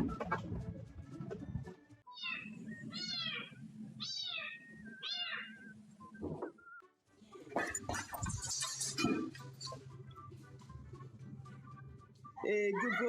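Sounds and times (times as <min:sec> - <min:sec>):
cat meowing: 0:02.1 - 0:05.7.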